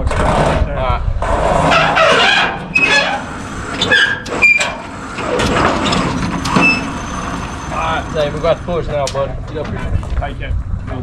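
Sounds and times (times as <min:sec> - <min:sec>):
steady mechanical noise: 0:00.0 - 0:11.0
high metal squeaks: 0:01.5 - 0:10.0.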